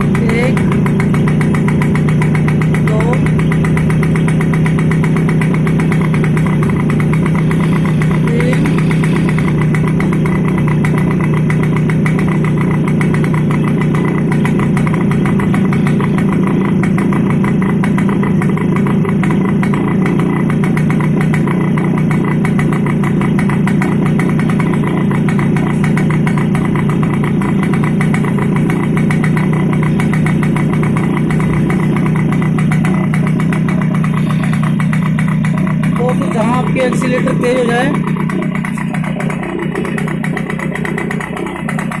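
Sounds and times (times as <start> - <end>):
moped engine idling: 0.0 - 42.0.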